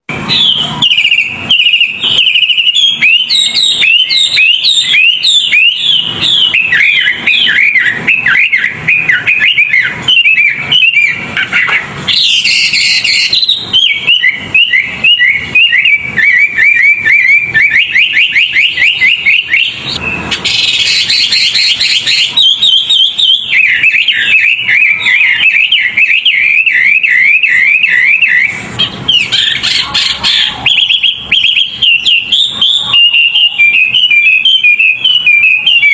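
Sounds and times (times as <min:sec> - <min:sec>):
songbird whistling rapid notes: 0:00.0 - 0:35.9.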